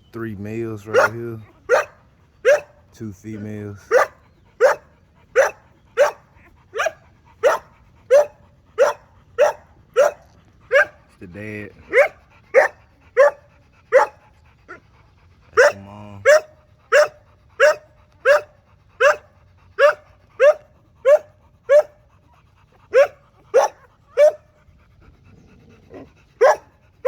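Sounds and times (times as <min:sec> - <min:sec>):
dog barking: 0:00.9 - 0:02.8, 0:03.9 - 0:11.1, 0:11.9 - 0:14.8, 0:15.5 - 0:22.0, 0:22.9 - 0:24.5, 0:25.9 - 0:26.8.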